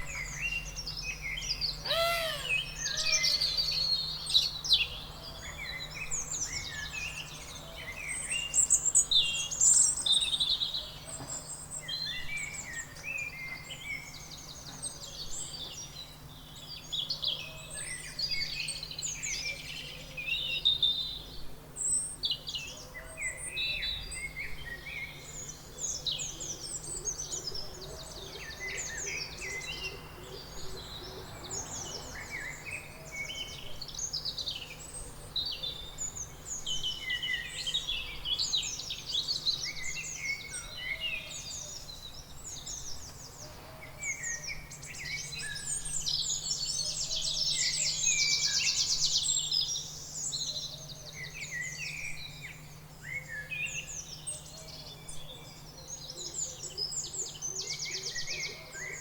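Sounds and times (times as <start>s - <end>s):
birds chirping and singing: 1.7s - 4.5s
rapid bird trill: 1.8s - 4.0s.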